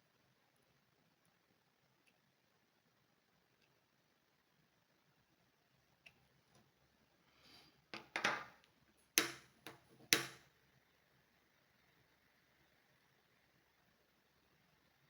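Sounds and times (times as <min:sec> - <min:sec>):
sharp clicks and knocks: 0:09.2 - 0:10.4.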